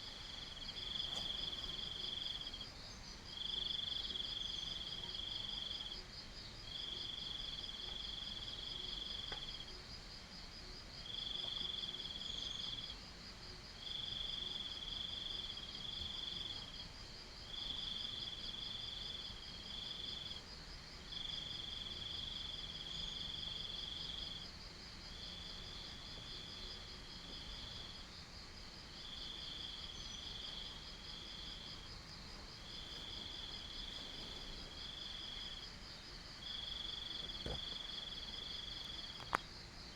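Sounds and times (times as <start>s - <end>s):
lower insect trill: 13.8s - 39.9s
high pulsing insect trill: 21.2s - 39.9s.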